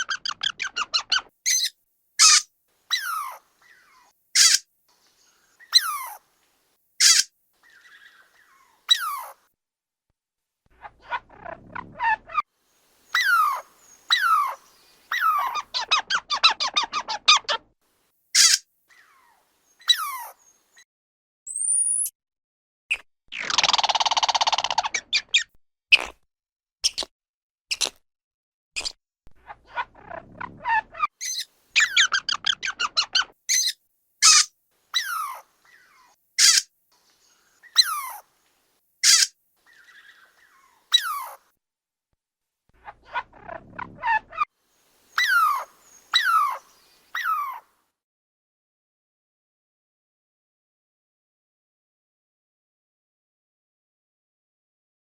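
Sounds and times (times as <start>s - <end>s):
squirrel calling: 0.0s - 4.6s, 5.2s - 6.3s, 7.0s - 9.4s, 13.0s - 17.5s, 18.4s - 20.8s, 30.6s - 38.4s, 39.0s - 41.4s, 45.1s - 47.6s.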